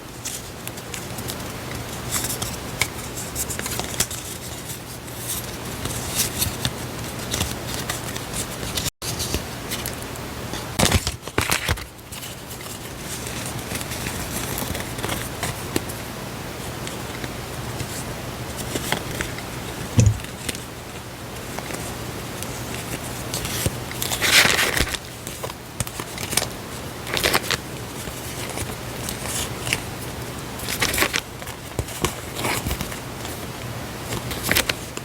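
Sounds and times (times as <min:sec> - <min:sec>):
paper rustling and crinkling: 0:00.1 - 0:10.0, 0:10.8 - 0:15.9, 0:21.5 - 0:35.0
dull thump: 0:20.0 - 0:20.4.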